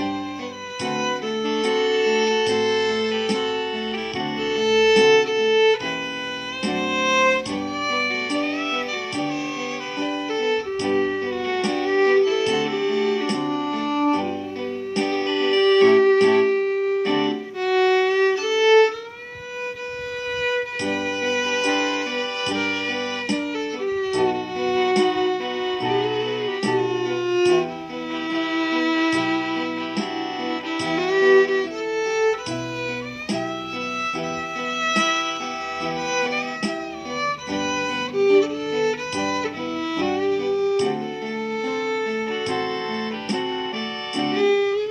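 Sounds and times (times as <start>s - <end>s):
light regular beat: 0.0s - 44.9s
violin melody: 0.0s - 44.9s
plucked guitar: 20.7s - 44.9s.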